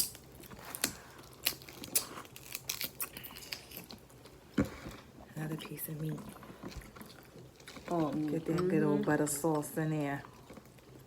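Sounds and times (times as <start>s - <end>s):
crab shells cracking: 0.0s - 4.3s.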